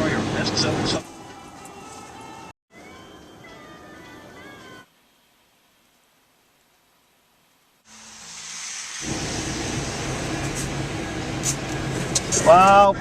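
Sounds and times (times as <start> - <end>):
road and engine noise inside car: 9.0 - 13.0.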